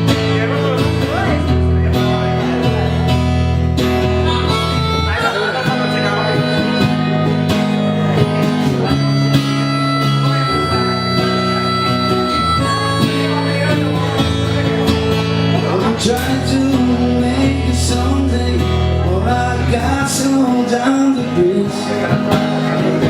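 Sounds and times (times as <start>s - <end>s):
strummed acoustic guitar: 0.0s - 23.0s
harmonica solo: 4.0s - 14.6s.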